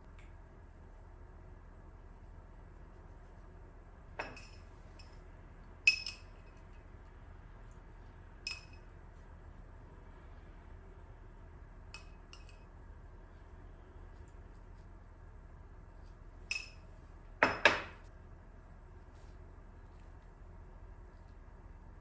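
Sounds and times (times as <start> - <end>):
glass and tableware clinking: 4.2 - 5.2, 5.9 - 6.4, 8.5 - 8.8, 12.0 - 12.5, 16.5 - 16.8, 17.4 - 18.0.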